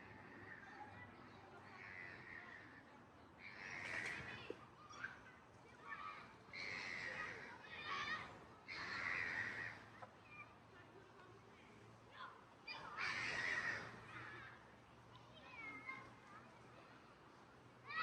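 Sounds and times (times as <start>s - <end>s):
crow rattling call: 8.7s - 9.8s
crows cawing: 8.7s - 9.9s, 13.0s - 14.0s.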